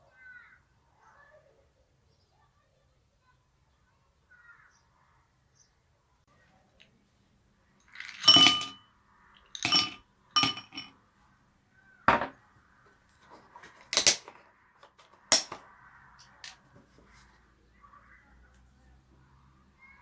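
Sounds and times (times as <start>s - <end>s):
glass handling sounds: 7.9s - 8.8s, 9.5s - 10.9s
glassware clinking: 7.9s - 8.8s, 9.5s - 10.9s.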